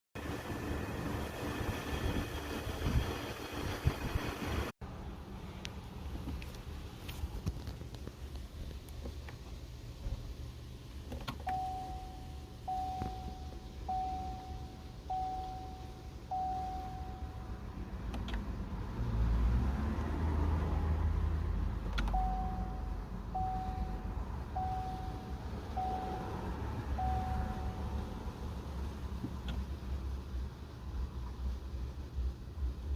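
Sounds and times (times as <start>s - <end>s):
dashboard warning chime beeps: 11.4s - 17.6s, 22.1s - 28.0s.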